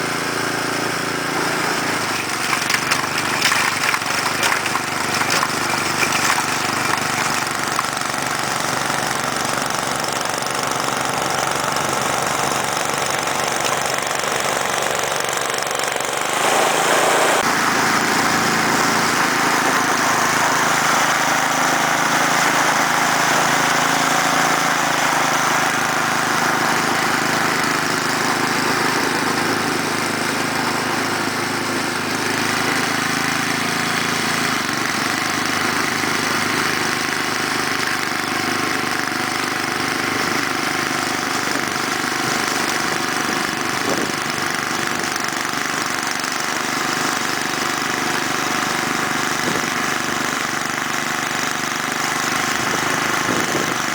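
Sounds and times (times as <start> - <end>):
snowblower engine running: 0.0 - 53.9.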